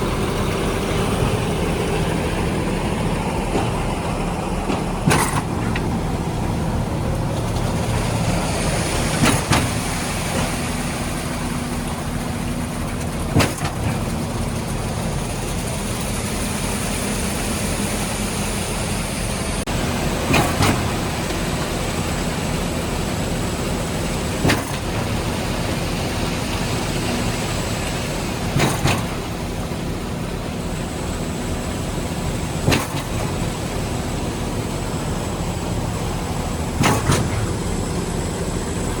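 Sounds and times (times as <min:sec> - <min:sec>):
diesel truck engine running: 0:00.0 - 0:39.0
sharp clack: 0:36.8 - 0:37.5.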